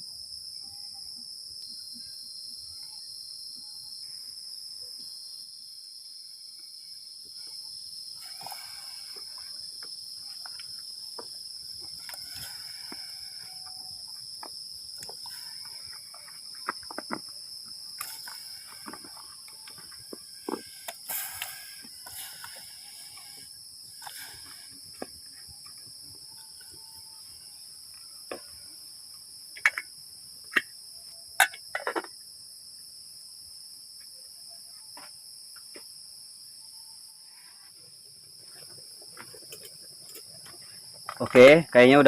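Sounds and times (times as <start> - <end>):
insects buzzing: 0.0 - 42.0.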